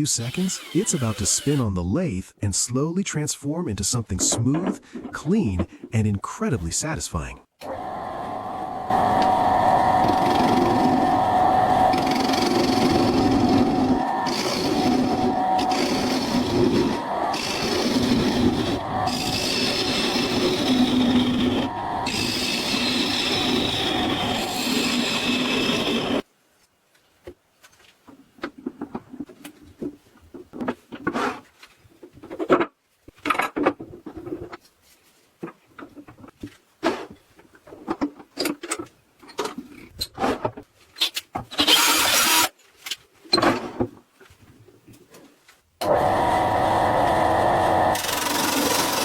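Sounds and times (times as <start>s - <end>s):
steady workshop noise with tones: 0.0s - 1.6s, 7.6s - 26.2s, 41.0s - 43.0s, 45.8s - 49.0s
tool scraping wood: 0.0s - 1.7s, 9.9s - 26.2s, 47.9s - 49.0s.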